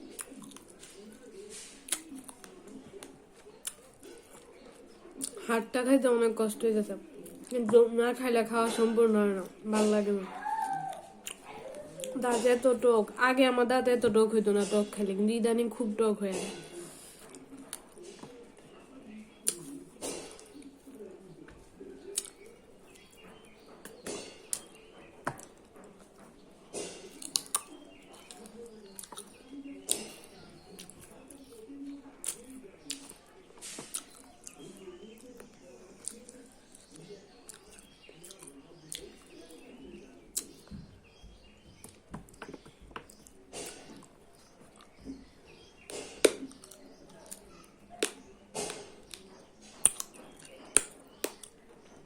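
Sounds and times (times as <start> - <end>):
chewing and lip smacking: 0.0 - 5.4, 7.1 - 7.6, 10.7 - 12.2, 19.4 - 21.1, 22.0 - 26.2, 27.1 - 39.7, 40.3 - 40.7, 43.0 - 45.0, 45.9 - 51.6
wet mouth clicks: 0.1 - 0.7, 1.9 - 3.8, 19.4 - 20.7, 22.1 - 22.5, 27.1 - 31.0, 33.8 - 34.6, 48.0 - 51.6
chewing and crunching bones: 26.8 - 31.2, 36.0 - 39.7, 45.8 - 51.6.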